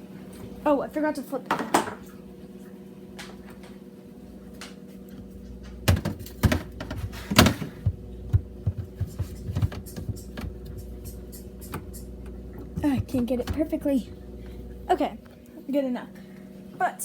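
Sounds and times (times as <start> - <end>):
low steady hum: 0.0 - 17.0
plastic containers knocking on shelves: 5.6 - 11.2, 12.5 - 14.0.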